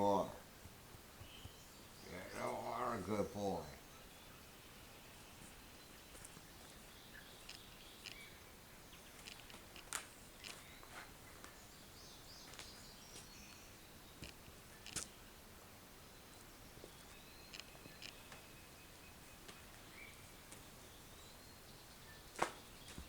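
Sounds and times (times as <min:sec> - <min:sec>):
faint clicks and ticks: 0:07.4 - 0:08.3, 0:09.1 - 0:10.7, 0:17.4 - 0:18.5.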